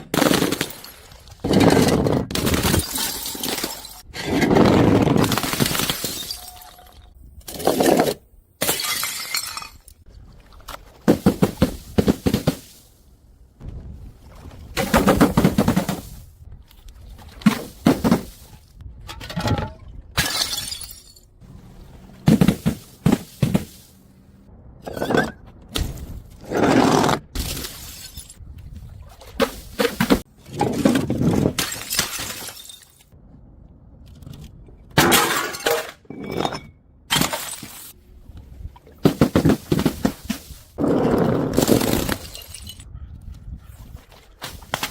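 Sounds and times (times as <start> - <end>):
glass bottles smashing: 2.4 - 4.1, 5.2 - 7.8, 8.6 - 9.9, 20.2 - 21.3, 27.4 - 28.4, 31.4 - 33.0, 35.0 - 37.9, 41.6 - 42.8.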